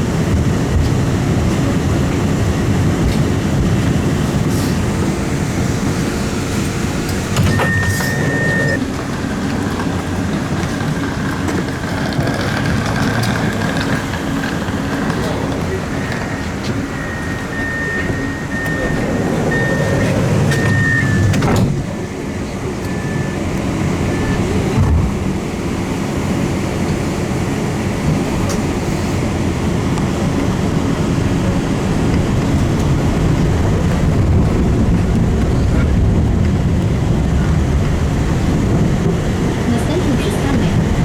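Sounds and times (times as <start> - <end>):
tram rumbling: 0.0 - 41.0
short high beeps: 7.5 - 8.8.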